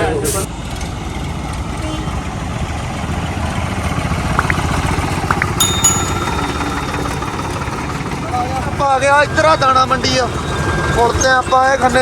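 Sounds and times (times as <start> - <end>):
tractor diesel engine running: 0.1 - 12.0
brief high chirps: 5.3 - 7.2.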